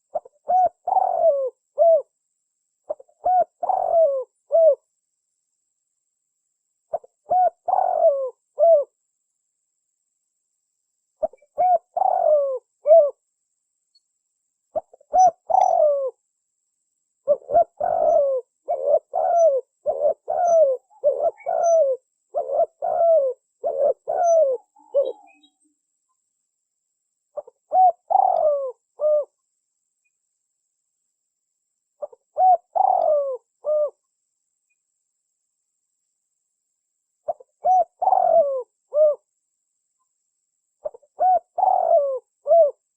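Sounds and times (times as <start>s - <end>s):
dove cooing: 0.0s - 2.1s, 2.9s - 4.9s, 6.9s - 9.0s, 11.2s - 13.2s, 14.7s - 16.2s, 17.2s - 25.6s, 27.4s - 29.4s, 32.0s - 34.0s, 37.2s - 39.3s, 40.8s - 42.8s.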